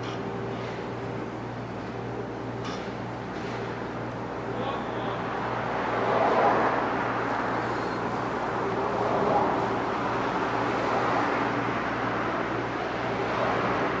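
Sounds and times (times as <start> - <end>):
vehicles driving past: 2.9 - 14.0.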